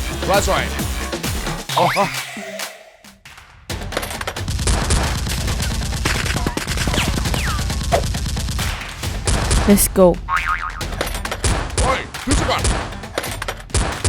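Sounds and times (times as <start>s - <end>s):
rapid continuous gunfire: 3.7s - 9.7s, 11.0s - 14.0s.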